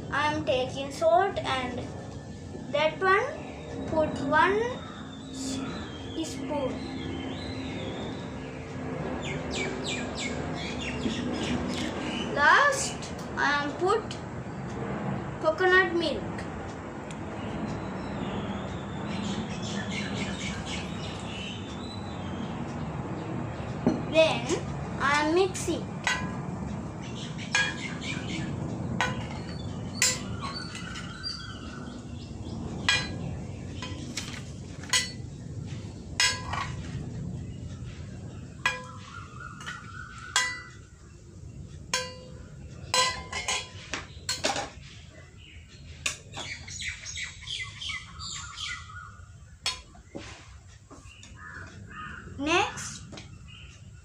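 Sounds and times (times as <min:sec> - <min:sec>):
birds chirping: 0:00.0 - 0:54.0
spoon clinking against a bowl: 0:29.0 - 0:31.2, 0:33.8 - 0:35.2, 0:38.7 - 0:40.8, 0:41.9 - 0:44.6.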